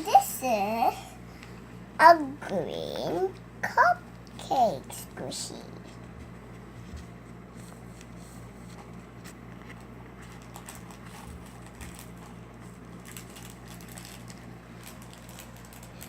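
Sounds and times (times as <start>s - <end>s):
steady low hum: 0.0s - 16.0s
rustling plastic packaging: 7.5s - 16.0s.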